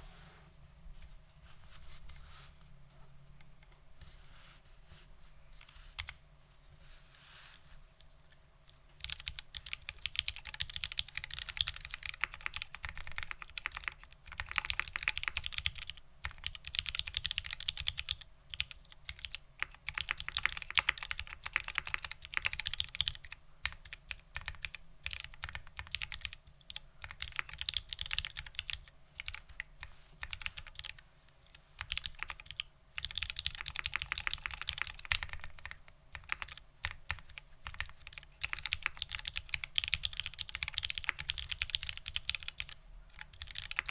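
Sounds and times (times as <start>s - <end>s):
mechanical keyboard typing: 9.0s - 31.0s, 31.8s - 43.9s.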